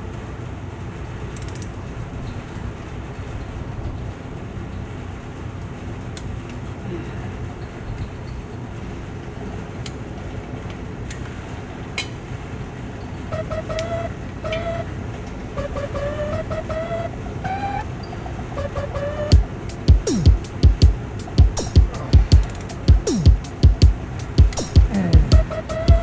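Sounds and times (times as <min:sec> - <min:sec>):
pitched tone: 0:13.4 - 0:14.9, 0:15.6 - 0:17.9, 0:18.6 - 0:26.0.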